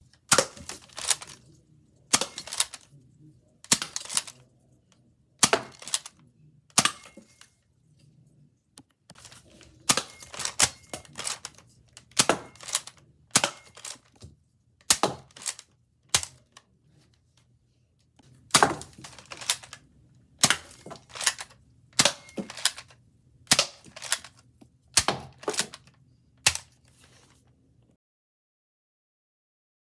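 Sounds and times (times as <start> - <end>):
toy blaster plastic clacks: 0.3 - 1.5, 2.1 - 2.9, 3.6 - 4.4, 5.4 - 7.2, 9.9 - 14.3, 14.9 - 16.6, 18.5 - 19.8, 20.4 - 24.4, 25.0 - 26.8.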